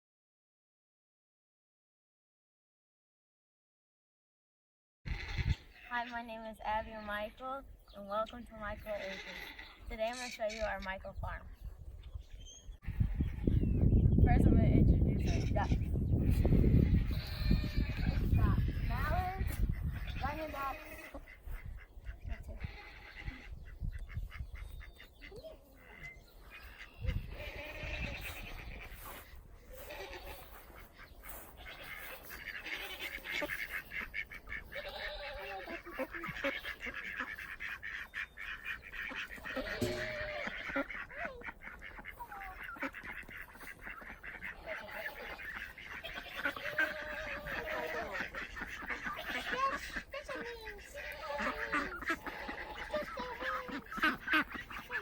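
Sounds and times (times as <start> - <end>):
ducks quacking: 5.1 - 7.5, 8.1 - 11.6, 12.8 - 55.0
geese honking: 15.2 - 55.0.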